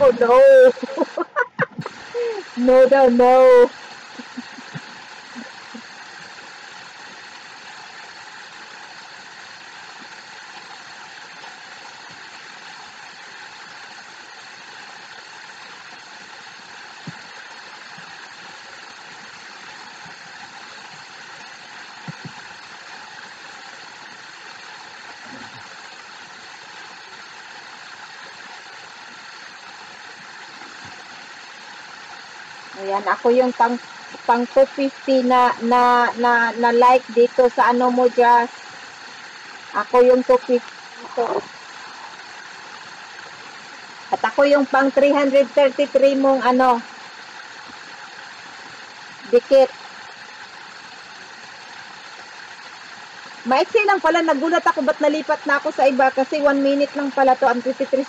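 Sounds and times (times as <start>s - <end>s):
steady hum and hiss: 0.0s - 58.0s.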